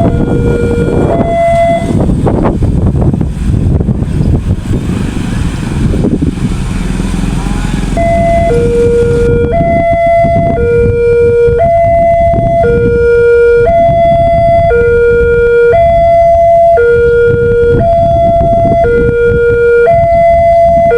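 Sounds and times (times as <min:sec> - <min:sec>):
two-tone level-crossing siren: 0:00.0 - 0:02.1, 0:08.0 - 0:20.9
train rumbling over crossing: 0:00.0 - 0:14.6.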